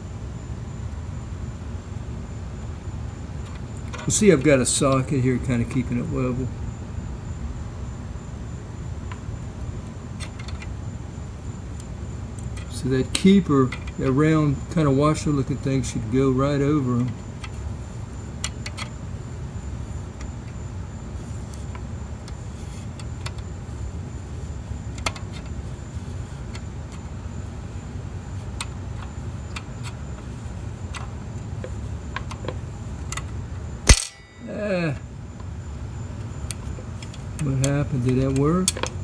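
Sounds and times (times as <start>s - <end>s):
small metallic clicks and taps: 25.0s - 25.5s, 36.5s - 39.0s
sharp loud snap: 33.9s - 34.6s.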